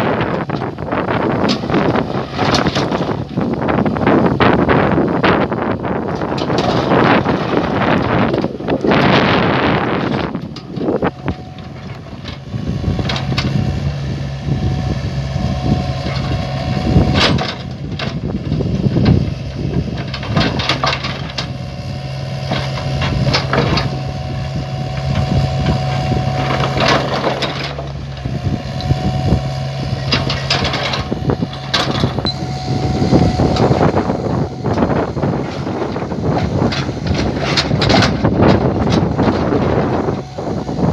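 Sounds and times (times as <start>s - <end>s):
excavator engine running: 0.0s - 40.9s
knocks clanks and scrapes: 0.1s - 14.0s, 15.4s - 40.9s
high whine: 23.8s - 40.9s.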